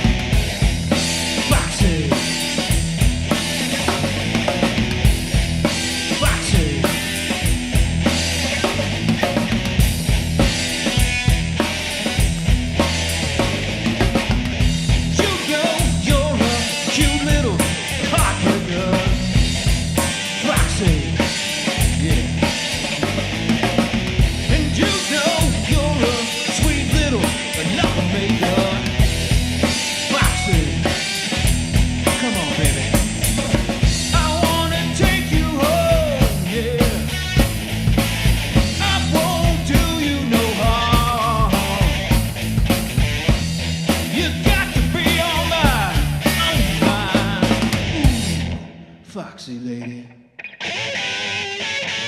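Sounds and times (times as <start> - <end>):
drum kit beat: 0.0 - 48.6
bass guitar: 0.0 - 52.0
electric guitar bending notes: 50.2 - 52.0.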